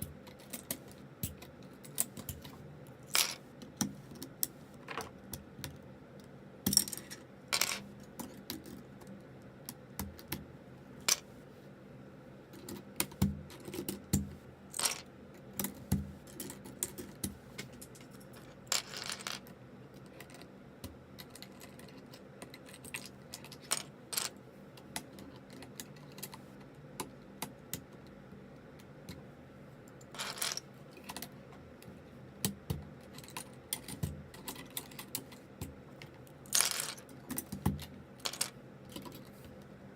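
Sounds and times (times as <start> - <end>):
clatter of loose keycaps: 33.0 - 35.5.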